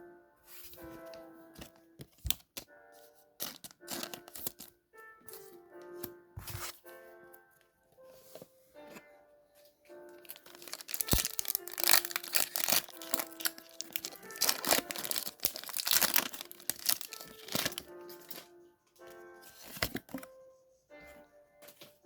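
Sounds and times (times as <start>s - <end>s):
soft background music: 0.0s - 22.0s
foil wrapper tearing and crinkling: 3.4s - 4.7s, 10.2s - 18.4s.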